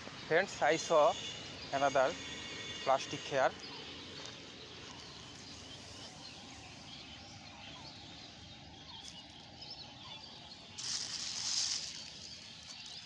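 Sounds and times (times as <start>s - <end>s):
small birds chirping: 0.0s - 13.0s
plastic crinkling rustle: 10.8s - 13.0s.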